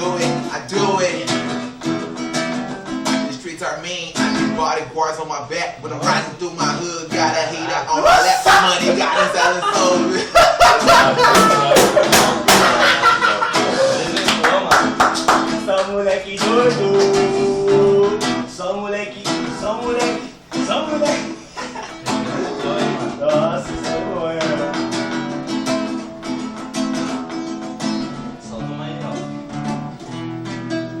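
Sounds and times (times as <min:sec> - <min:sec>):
acoustic guitar music: 0:00.0 - 0:31.0.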